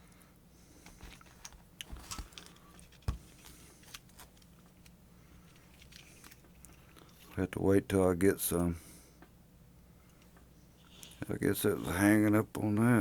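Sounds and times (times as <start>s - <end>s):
faint steady hum: 0.0s - 13.0s
clicks and knocks handling parts: 0.8s - 7.4s.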